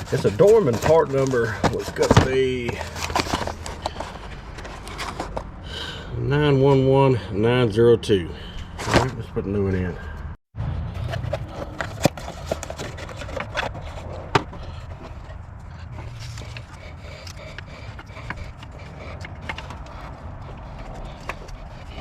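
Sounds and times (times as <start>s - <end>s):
tools clicking and scraping: 0.0s - 5.5s, 11.1s - 22.0s.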